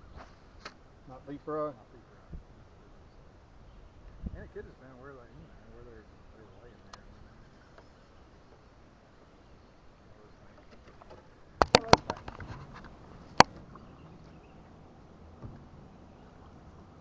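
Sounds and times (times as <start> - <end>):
low background noise: 0.0 - 17.0
sharp knocks in a boat: 10.6 - 14.4, 15.3 - 15.8.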